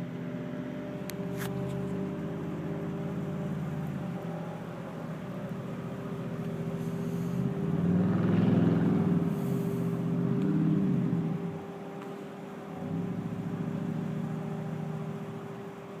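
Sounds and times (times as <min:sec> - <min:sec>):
distant low mechanical drone: 0:00.0 - 0:16.0.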